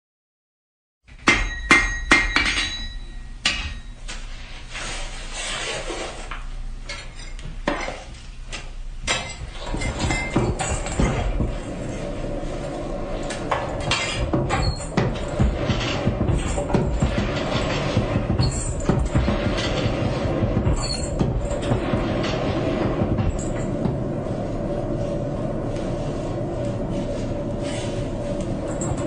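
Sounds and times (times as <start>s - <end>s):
hammer ringing on metal: 1.2s - 3.9s
rumble with hum: 6.6s - 29.0s.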